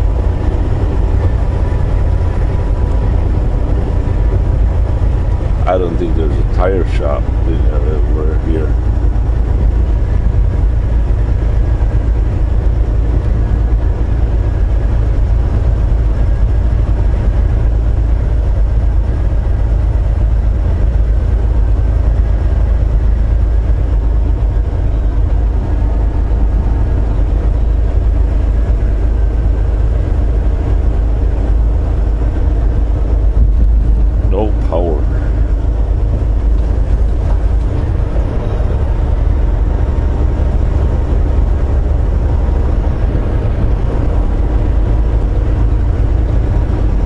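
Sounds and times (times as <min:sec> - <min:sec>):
road noise: 0:00.0 - 0:47.0
truck engine rumble: 0:00.0 - 0:47.0.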